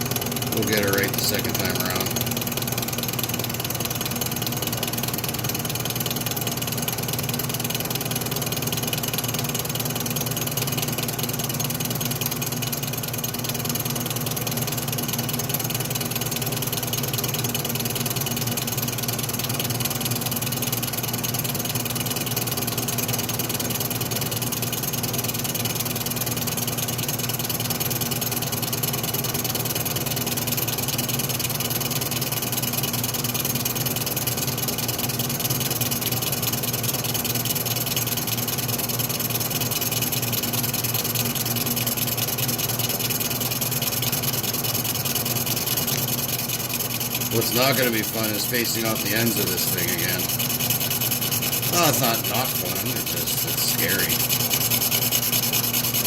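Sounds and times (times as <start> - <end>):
metal lathe humming: 0.0 - 17.9, 39.2 - 56.0.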